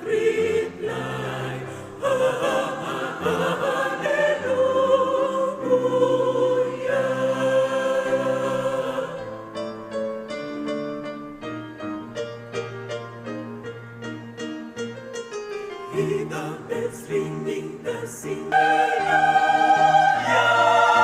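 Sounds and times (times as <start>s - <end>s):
choir singing in harmony: 0.0s - 10.5s, 15.9s - 21.0s.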